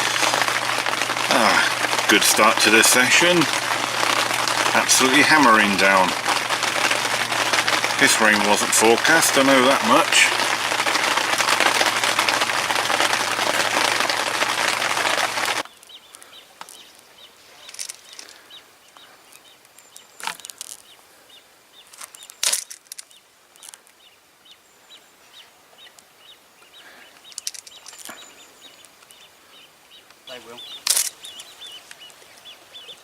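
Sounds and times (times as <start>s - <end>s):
sharp clicks and cracks: 0.0s - 16.8s, 21.9s - 24.0s, 27.2s - 28.2s, 30.8s - 32.1s
heavy rain on a canopy: 0.0s - 19.2s, 26.7s - 29.6s, 30.2s - 33.0s.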